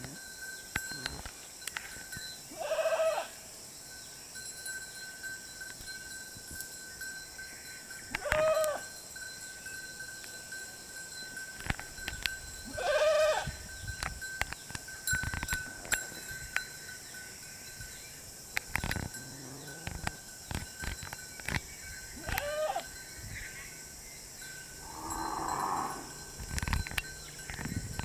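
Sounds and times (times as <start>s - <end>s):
goats bleating: 22.2s - 22.9s.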